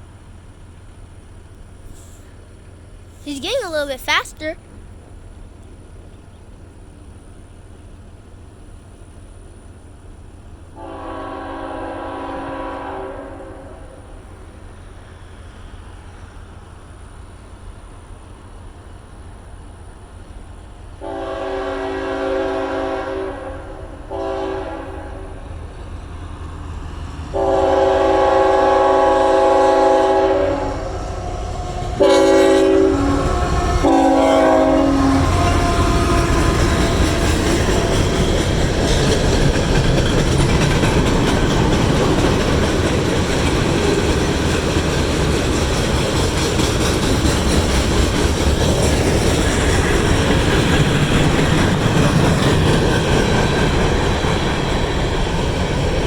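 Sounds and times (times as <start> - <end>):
train wheel and rail clatter: 4.7 - 56.0
locomotive horn blasts: 10.8 - 14.0, 21.0 - 25.3, 27.4 - 31.1, 31.9 - 37.5.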